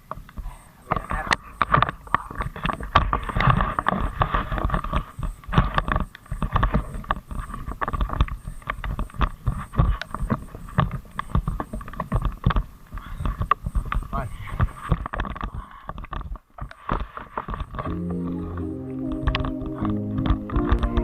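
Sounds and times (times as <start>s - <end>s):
frogs calling: 0.4s - 16.0s.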